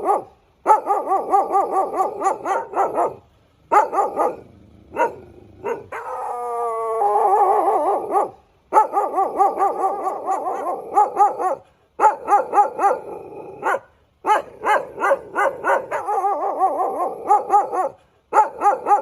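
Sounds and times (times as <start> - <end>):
dog yipping: 0.0 - 6.4, 7.0 - 19.0
dog whining: 3.8 - 8.3.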